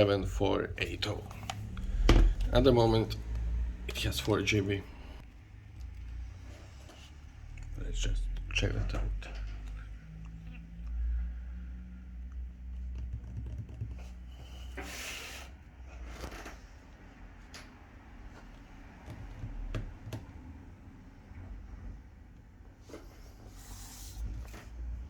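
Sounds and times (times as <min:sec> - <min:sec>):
low handling rumble: 0:00.0 - 0:12.5
laptop keyboard typing: 0:12.7 - 0:14.2.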